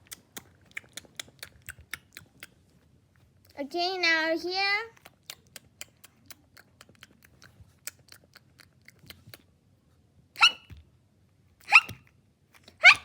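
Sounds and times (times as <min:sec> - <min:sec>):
voice imitating hiccups: 0:10.4 - 0:10.8, 0:11.6 - 0:12.0.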